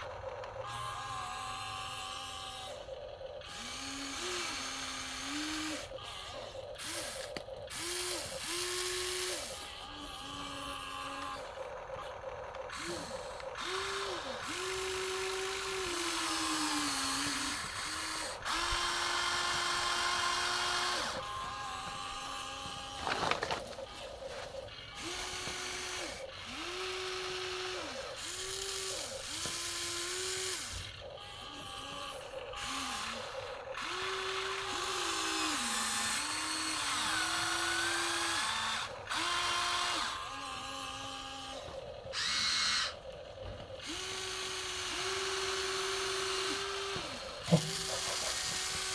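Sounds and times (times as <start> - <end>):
electric motors whining: 0.0 - 48.9.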